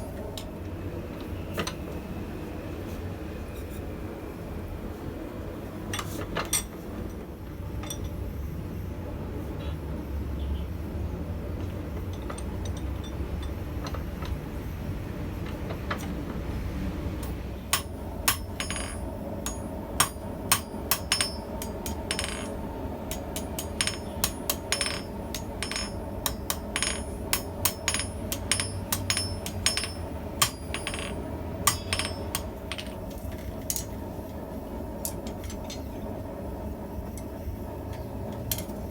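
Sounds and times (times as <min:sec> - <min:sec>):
hammer striking steel on anvil: 0:17.2 - 0:33.0.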